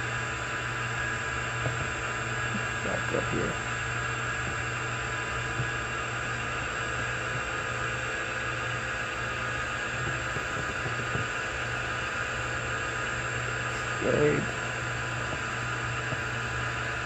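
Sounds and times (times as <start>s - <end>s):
lathe machine hum: 0.0s - 17.0s.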